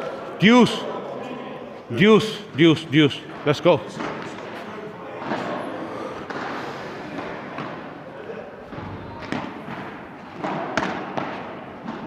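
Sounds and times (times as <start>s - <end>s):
rackets hitting ball: 3.3s - 5.6s, 6.2s - 12.0s
ball bouncing on court: 8.7s - 12.0s.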